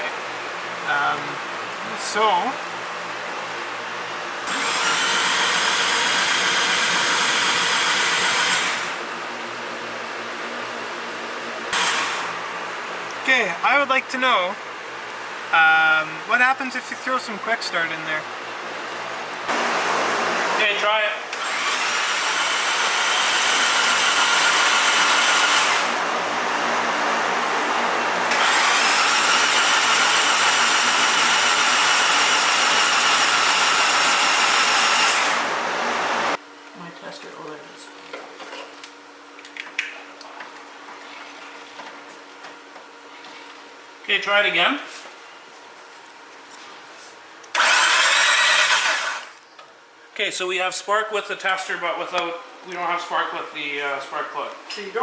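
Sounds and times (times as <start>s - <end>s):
engine cranking on starter: 4.5s - 9.0s, 21.3s - 26.0s, 28.3s - 35.5s, 47.5s - 49.4s.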